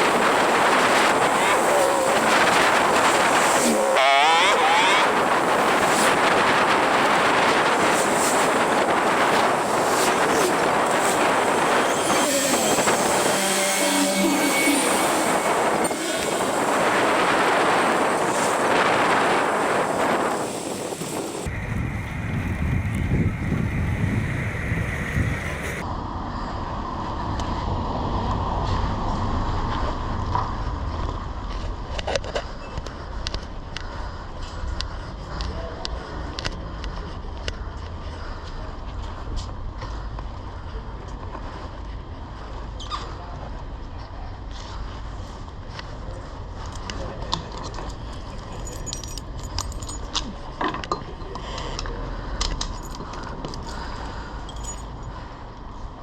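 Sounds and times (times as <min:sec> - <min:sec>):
wind rushing: 0:00.0 - 0:29.3
road noise: 0:00.0 - 0:56.0.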